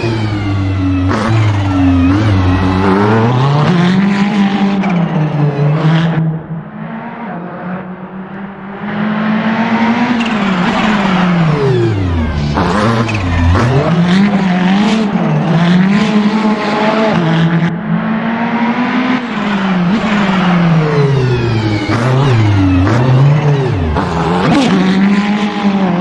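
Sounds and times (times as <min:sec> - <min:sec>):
racing car engine revving: 0:00.0 - 0:26.0.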